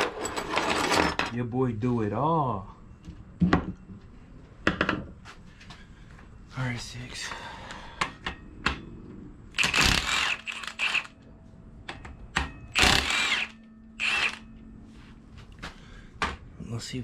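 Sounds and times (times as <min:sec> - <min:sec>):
power tool bursts: 0:09.6 - 0:11.1, 0:12.7 - 0:14.4.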